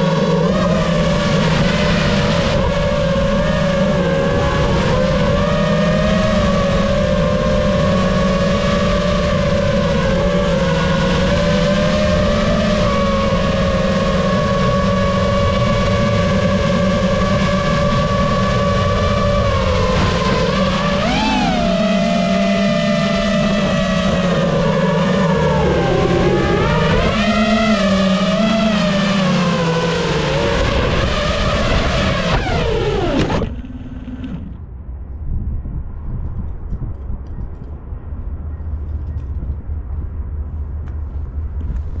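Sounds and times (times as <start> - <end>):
quadcopter motors whining: 0.0 - 34.6
wind buffeting microphone: 0.0 - 42.0.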